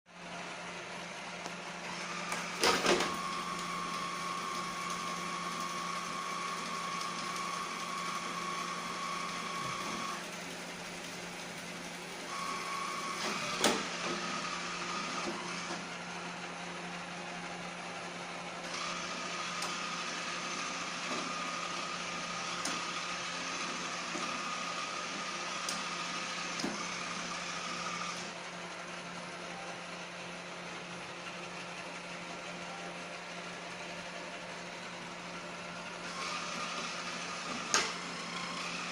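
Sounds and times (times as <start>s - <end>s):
robot vacuum motor whining: 1.8s - 28.4s, 35.9s - 38.9s.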